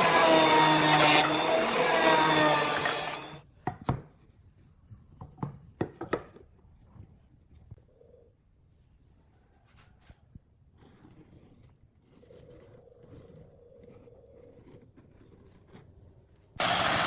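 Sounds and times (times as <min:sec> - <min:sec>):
power tool motor whine: 0:00.0 - 0:03.4, 0:16.6 - 0:17.0.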